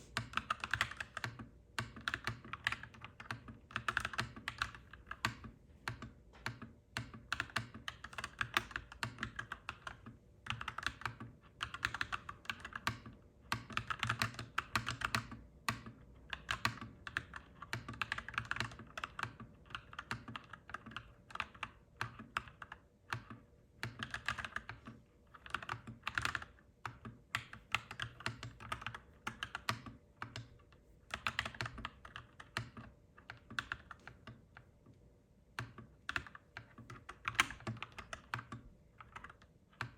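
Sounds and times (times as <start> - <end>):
mechanical keyboard typing: 0.2 - 34.7, 35.5 - 39.9.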